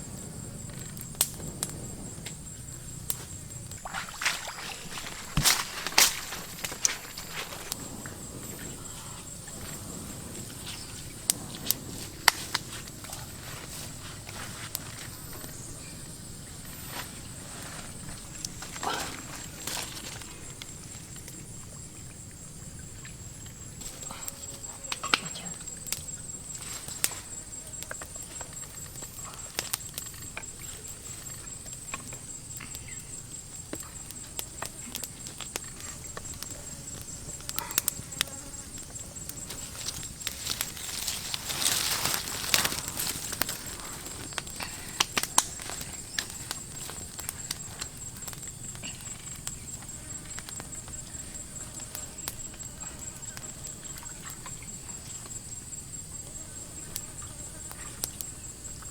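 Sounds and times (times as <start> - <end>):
rustling: 0.0 - 21.2, 33.6 - 52.9
insect chorus: 0.0 - 58.9.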